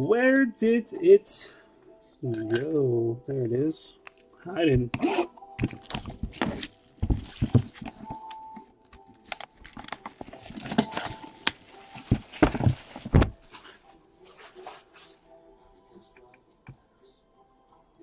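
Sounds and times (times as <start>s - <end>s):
box handling clicks and rustles: 4.1s - 13.7s
plastic wrap crinkling: 5.6s - 8.4s, 9.1s - 13.7s.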